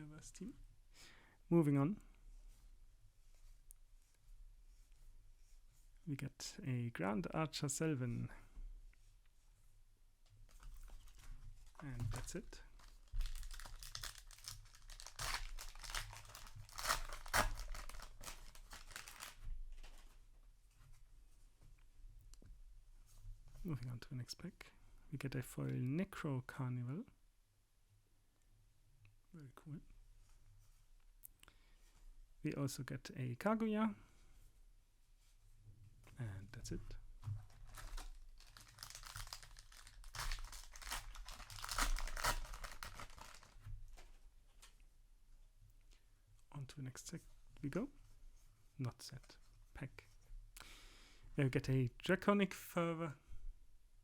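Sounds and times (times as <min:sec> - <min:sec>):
foil wrapper tearing and crinkling: 0:12.8 - 0:19.4, 0:37.5 - 0:43.6.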